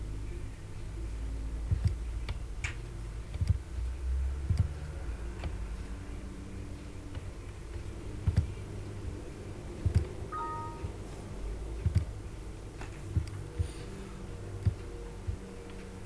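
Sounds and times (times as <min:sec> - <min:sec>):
low steady hum: 0:00.0 - 0:16.0
computer mouse clicks: 0:01.7 - 0:03.6, 0:04.5 - 0:04.8, 0:08.2 - 0:08.6, 0:14.6 - 0:15.8
two-note falling tone: 0:10.3 - 0:11.0.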